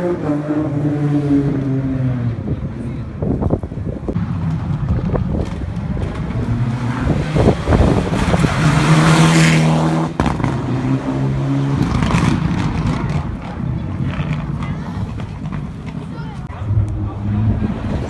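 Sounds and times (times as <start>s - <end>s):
rally car passing at speed: 5.4s - 14.6s.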